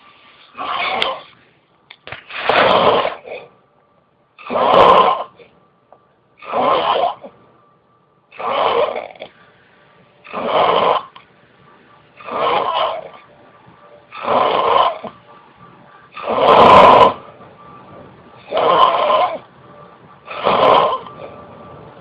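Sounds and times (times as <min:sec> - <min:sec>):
person snoring: 0:04.4 - 0:05.4, 0:06.4 - 0:07.3, 0:08.3 - 0:09.3, 0:10.2 - 0:11.2, 0:12.2 - 0:13.2, 0:14.1 - 0:15.1, 0:16.1 - 0:17.2, 0:18.5 - 0:19.4, 0:20.3 - 0:21.1.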